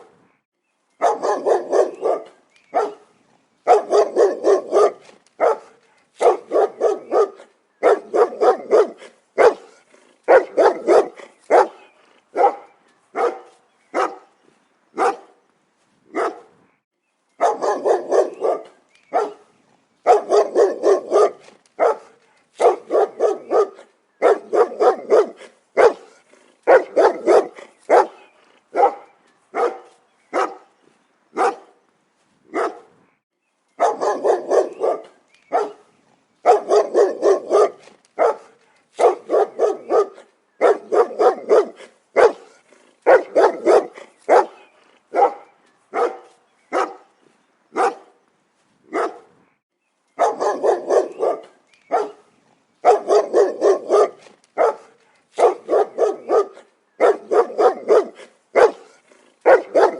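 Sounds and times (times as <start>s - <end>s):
dog barking: 1.0s - 14.3s, 15.0s - 15.4s, 16.1s - 16.5s, 17.4s - 30.7s, 31.4s - 31.8s, 32.5s - 32.9s, 33.8s - 47.1s, 47.8s - 48.2s, 48.9s - 49.3s, 50.2s - 59.9s.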